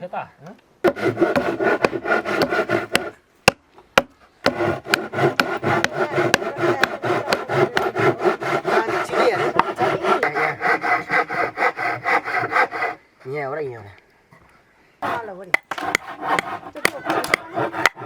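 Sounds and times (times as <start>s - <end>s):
hand rasping wood: 0.9s - 3.2s, 4.4s - 13.0s, 15.0s - 18.0s.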